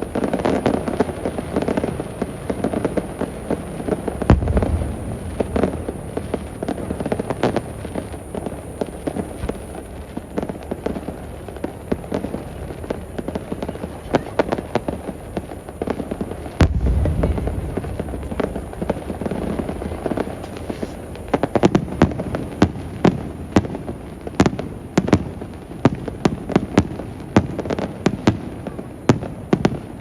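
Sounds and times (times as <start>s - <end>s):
heavy low firework boom: 0.0s - 23.8s
fireworks crackling: 0.0s - 30.0s.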